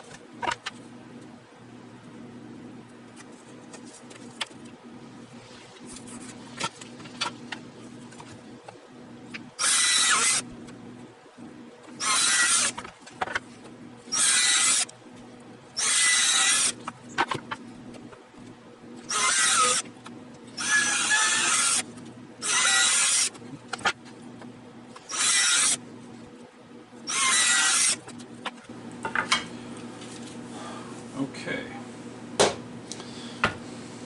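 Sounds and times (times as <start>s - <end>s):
power drill drilling: 9.6s - 10.4s, 12.0s - 12.8s, 14.1s - 14.9s, 15.8s - 16.7s, 19.1s - 19.8s, 20.6s - 21.8s, 22.4s - 23.3s, 25.1s - 25.8s, 27.1s - 28.0s.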